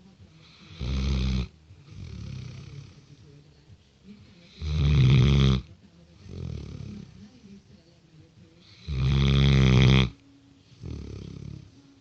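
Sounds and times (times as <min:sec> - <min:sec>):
puppy snoring: 0:00.0 - 0:03.5, 0:04.2 - 0:07.6, 0:08.6 - 0:12.0.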